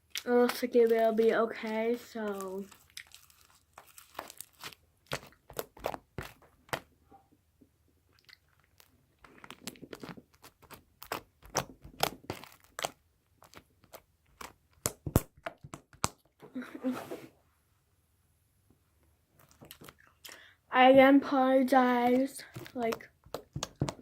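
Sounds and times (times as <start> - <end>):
slime being kneaded and stretched: 0.1 - 6.9, 8.3 - 16.2, 20.8 - 24.0.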